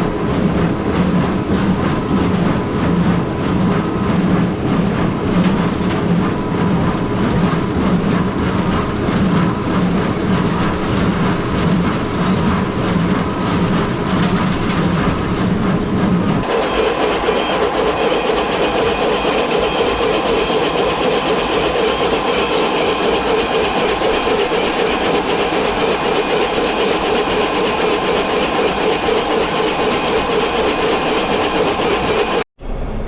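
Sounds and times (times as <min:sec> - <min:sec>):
baler mechanism running: 0:16.4 - 0:32.4
tractor engine: 0:16.4 - 0:32.4.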